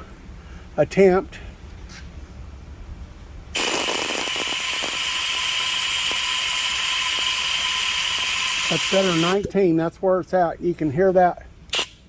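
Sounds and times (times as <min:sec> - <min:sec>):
vacuum tester hissing: 0:03.6 - 0:09.5, 0:11.7 - 0:12.0.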